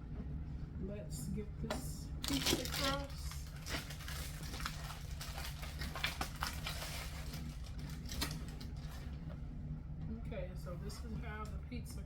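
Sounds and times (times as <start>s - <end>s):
plastic packaging crinkling: 2.2s - 9.2s.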